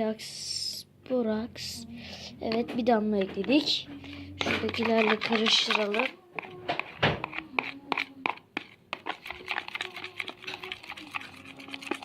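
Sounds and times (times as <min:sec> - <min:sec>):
slime being stirred: 0:02.4 - 0:12.0.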